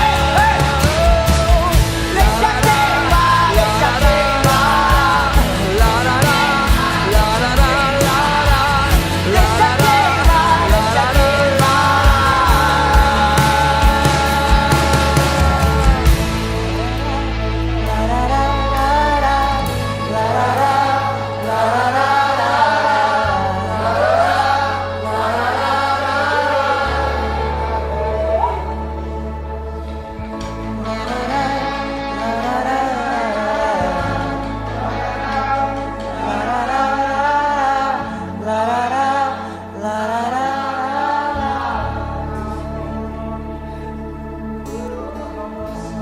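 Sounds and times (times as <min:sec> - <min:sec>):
held low chords: 0:00.0 - 0:46.0
low keyboard pad: 0:00.0 - 0:46.0
voices singing worship music: 0:00.0 - 0:46.0.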